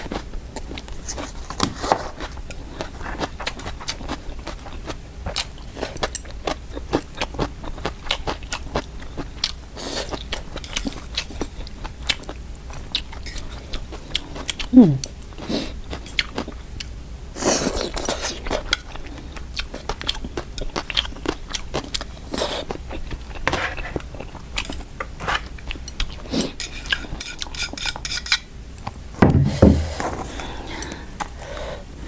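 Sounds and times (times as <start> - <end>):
chewing: 0.0 - 28.0
utensils clicking against bowl: 26.6 - 28.4.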